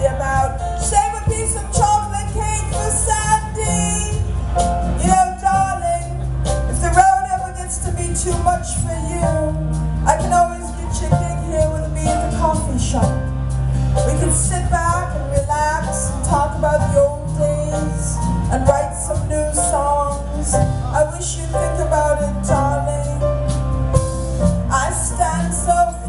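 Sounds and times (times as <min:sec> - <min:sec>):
live band instrumental music: 0:00.0 - 0:26.0.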